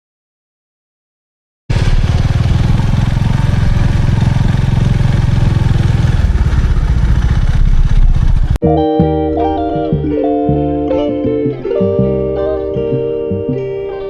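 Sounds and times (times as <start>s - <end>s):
engine running with fast pulse: 1.7s - 8.6s.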